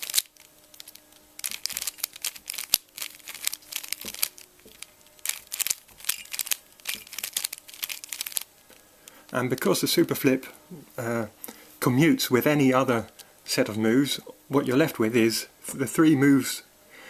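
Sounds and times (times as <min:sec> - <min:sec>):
plastic puzzle cube clicking and rattling: 0:00.0 - 0:08.5.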